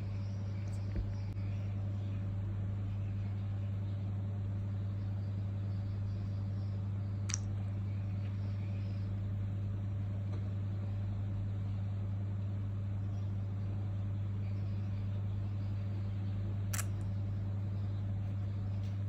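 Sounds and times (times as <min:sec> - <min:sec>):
low electrical hum: 0:00.0 - 0:19.0
sharp click: 0:16.7 - 0:17.1.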